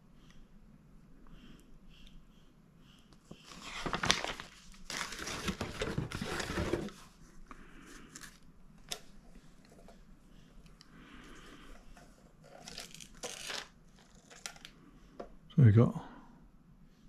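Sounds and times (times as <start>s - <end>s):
plastic packaging crinkling: 3.5s - 6.9s, 12.5s - 14.7s.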